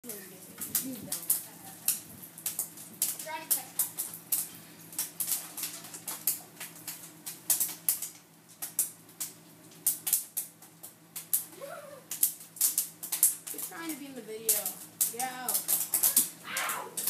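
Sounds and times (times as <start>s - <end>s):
popcorn popping: 0.0s - 17.0s.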